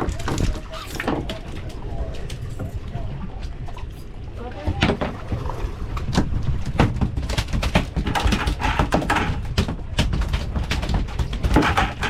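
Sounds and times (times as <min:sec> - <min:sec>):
knocks and clatter on boat: 0:00.0 - 0:01.8, 0:04.5 - 0:12.0.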